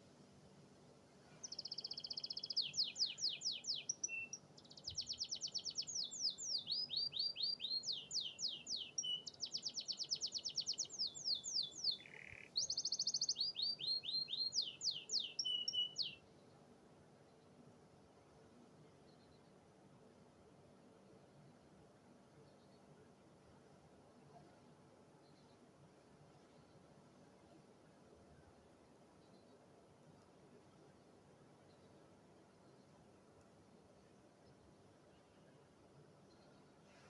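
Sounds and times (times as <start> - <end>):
canary singing trills: 1.4 - 16.2.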